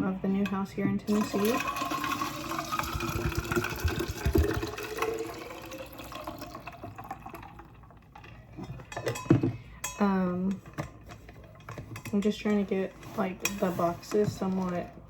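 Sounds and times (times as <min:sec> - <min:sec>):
water pouring into a cup: 0:01.1 - 0:08.1.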